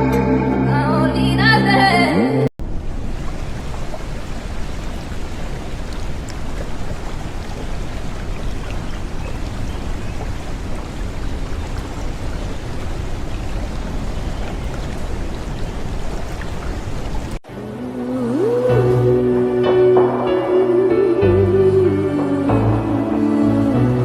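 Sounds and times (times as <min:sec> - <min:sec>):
rushing water: 0:02.6 - 0:24.0
faint drips: 0:03.0 - 0:17.4.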